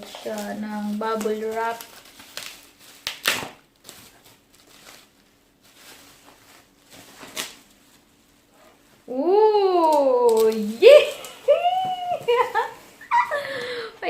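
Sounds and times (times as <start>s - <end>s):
bubble wrap rustling and crackling: 0.0s - 13.6s.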